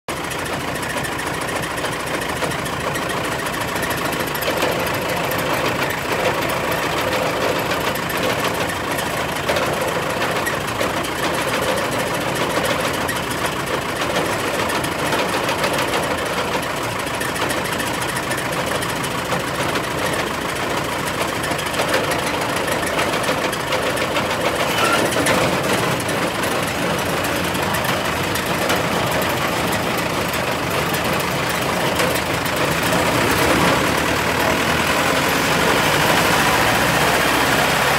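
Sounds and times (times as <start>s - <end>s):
diesel engine running: 0.1s - 37.9s
mechanical clatter: 3.8s - 34.5s.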